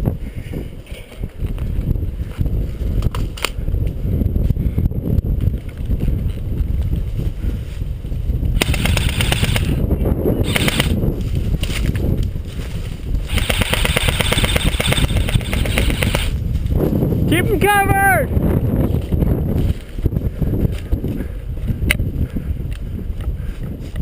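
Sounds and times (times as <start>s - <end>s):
wind rumble on microphone: 0.0s - 24.0s
airsoft guns firing: 8.6s - 9.8s, 10.4s - 11.0s, 13.3s - 16.3s.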